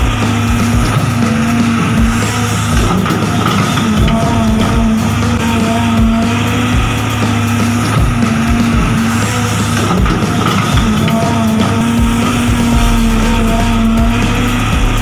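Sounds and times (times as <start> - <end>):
background music with beat: 0.0 - 15.0.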